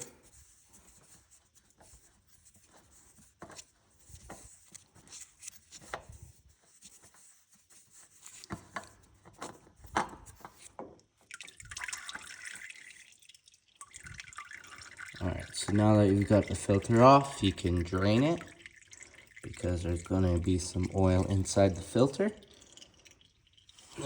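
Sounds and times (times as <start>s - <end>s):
oil trickling: 10.6s - 24.0s
oil dripping into a pan: 11.0s - 24.0s.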